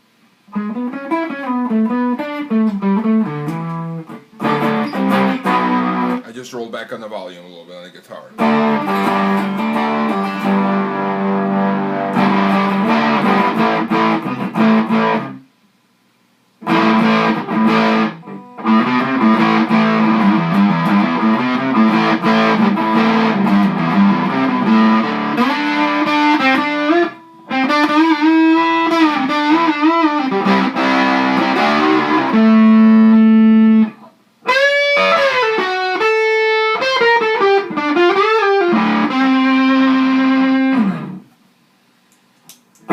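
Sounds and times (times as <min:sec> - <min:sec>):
distorted electric guitar: 0:00.5 - 0:06.3, 0:08.3 - 0:15.5, 0:16.6 - 0:41.3.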